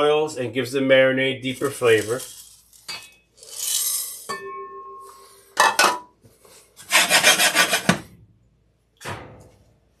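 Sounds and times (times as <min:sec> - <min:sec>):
seeds rattling in a dry pan: 0:01.4 - 0:04.3.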